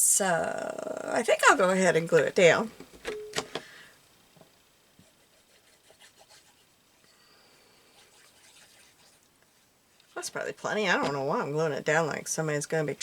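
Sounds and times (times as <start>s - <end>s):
faint rubbing of glue and paper: 5.0s - 6.8s, 7.8s - 10.2s.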